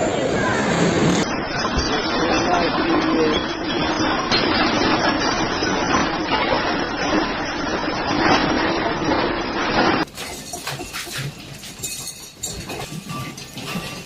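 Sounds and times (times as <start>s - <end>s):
objects clattering and rattling: 9.8s - 14.0s
glass clinking and breaking: 10.0s - 14.0s.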